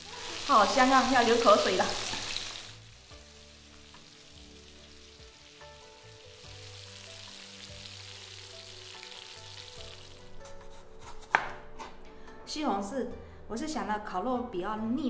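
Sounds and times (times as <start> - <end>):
meat sizzling on a grill: 0.0 - 10.4.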